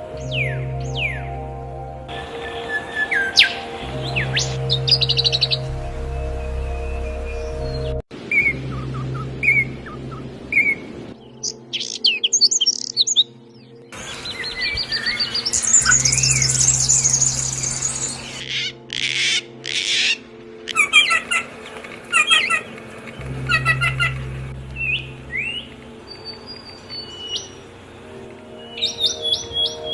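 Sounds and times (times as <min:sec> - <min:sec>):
songbirds singing: 0:00.0 - 0:29.9.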